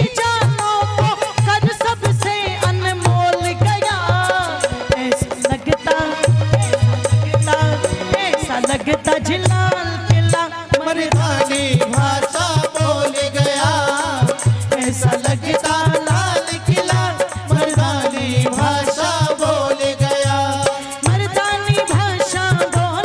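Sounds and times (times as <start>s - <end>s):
low drum beat: 11.1s - 23.0s.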